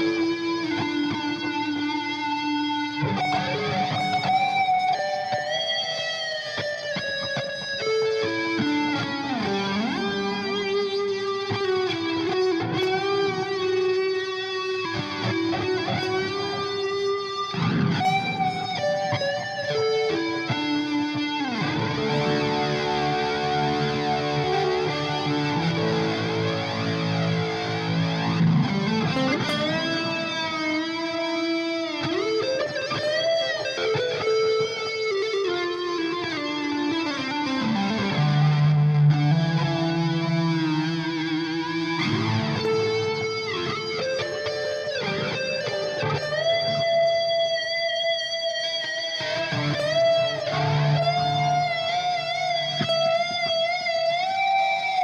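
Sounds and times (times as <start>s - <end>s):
electric guitar lead line: 0.0s - 55.0s.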